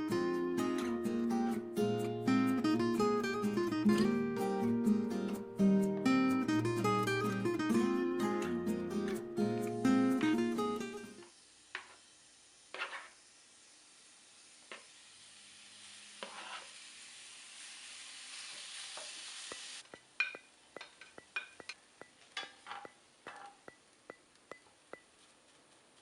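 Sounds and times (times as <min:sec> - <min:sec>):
food sizzling in a frying pan: 0:09.6 - 0:21.6
utensil scraping a pan: 0:12.7 - 0:13.2, 0:16.2 - 0:16.8.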